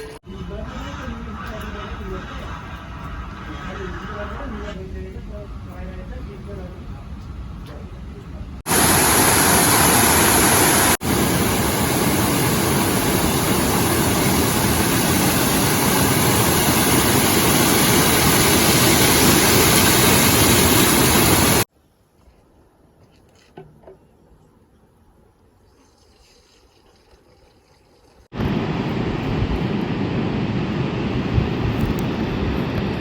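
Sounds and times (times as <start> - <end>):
loud steady rushing noise: 8.7 - 21.7, 28.4 - 33.0.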